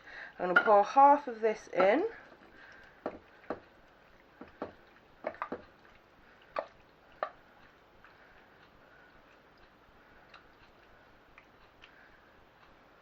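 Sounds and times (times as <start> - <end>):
wet plops of pasta: 1.8 - 8.2
spoon knocking on dish: 3.0 - 3.7, 4.4 - 5.7.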